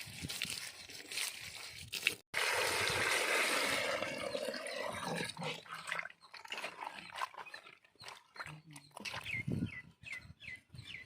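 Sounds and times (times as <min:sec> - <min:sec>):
water gushing: 0:02.3 - 0:05.9.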